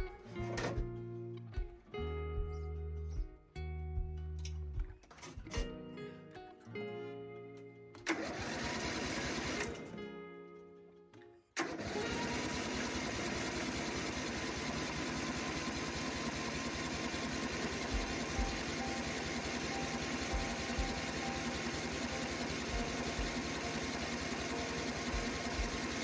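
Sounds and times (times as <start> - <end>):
guitar music: 0.0 - 26.0
lawn mower engine starting: 8.0 - 10.0, 11.6 - 26.0.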